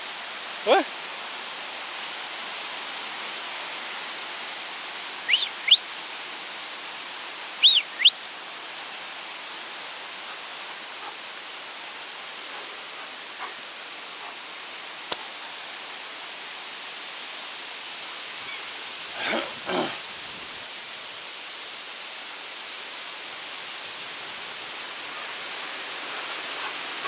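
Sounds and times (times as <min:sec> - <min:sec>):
short rising high whistles: 0:05.3 - 0:05.8, 0:07.6 - 0:08.2.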